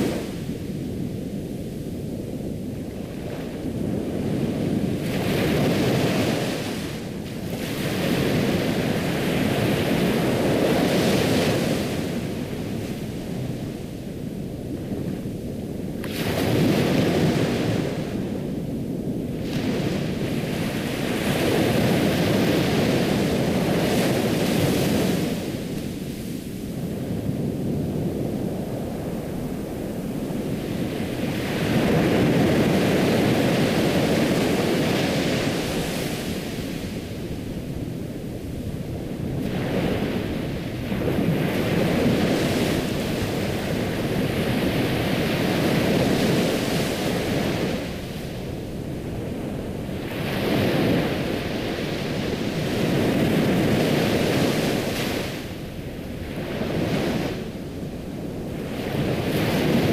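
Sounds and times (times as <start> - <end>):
ocean waves breaking: 19.3 - 59.9.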